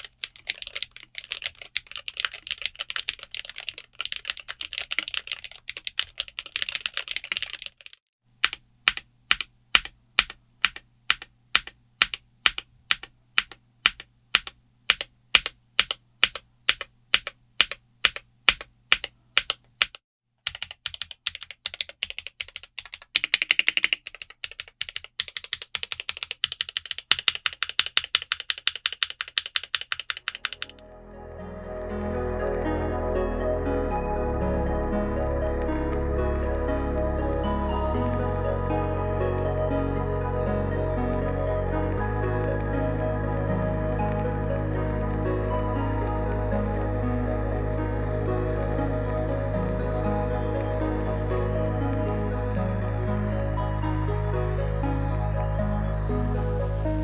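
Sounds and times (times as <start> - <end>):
keyboard typing: 0.0 - 30.8.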